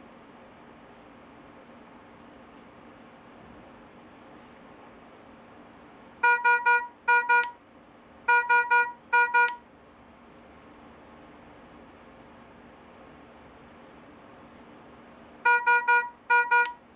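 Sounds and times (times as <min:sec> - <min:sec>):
patient monitor alarm beeps: 0:06.2 - 0:07.5, 0:08.3 - 0:09.6, 0:15.5 - 0:16.8.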